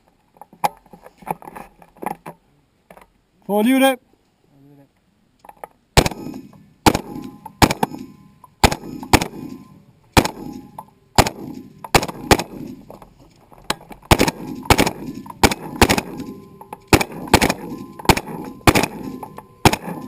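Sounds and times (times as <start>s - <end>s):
rifle single shots: 6.0s - 12.9s, 14.0s - 20.0s.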